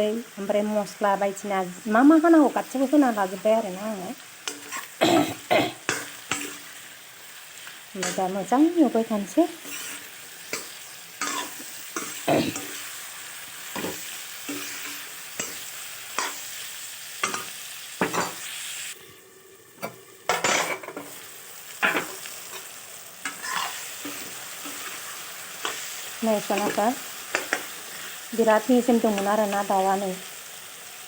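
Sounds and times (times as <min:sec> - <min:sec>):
chicken sizzling in a pan: 0:00.0 - 0:31.0
spatula scraping a pan: 0:09.5 - 0:13.0, 0:13.7 - 0:16.4, 0:21.9 - 0:27.8.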